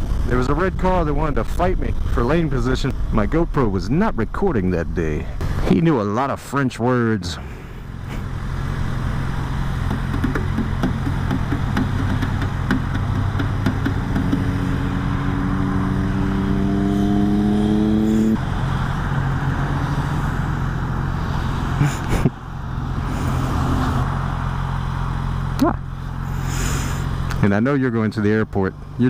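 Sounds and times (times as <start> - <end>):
motorcycle engine accelerating: 7.8 - 27.4.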